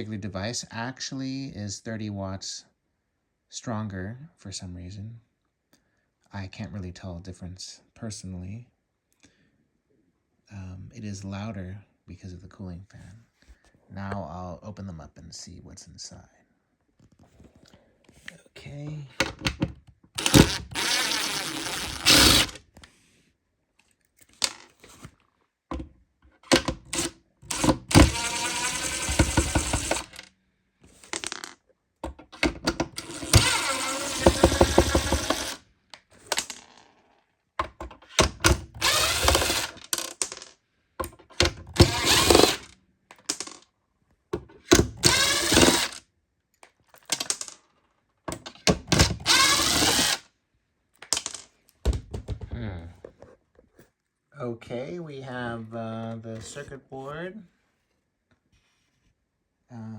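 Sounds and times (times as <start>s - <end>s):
electric screwdriver whirring: 20.2s - 22.6s, 26.5s - 30.3s, 32.4s - 35.6s, 38.4s - 39.9s, 41.7s - 42.7s, 44.7s - 46.0s, 48.9s - 50.2s.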